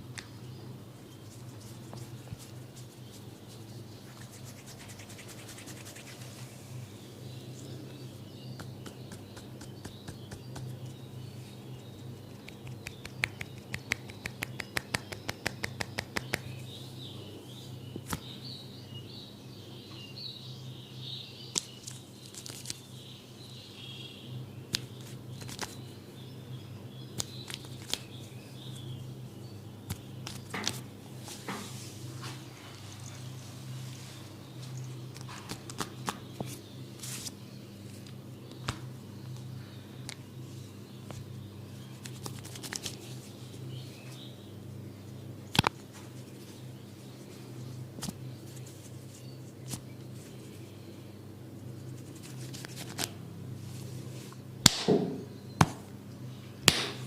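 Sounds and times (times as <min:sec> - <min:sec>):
steady low hum: 0:00.0 - 0:57.0
rhythmic hand tapping: 0:12.4 - 0:16.5
hand slaps on skin: 0:12.5 - 0:16.5, 0:54.6 - 0:55.8, 0:56.7 - 0:57.0.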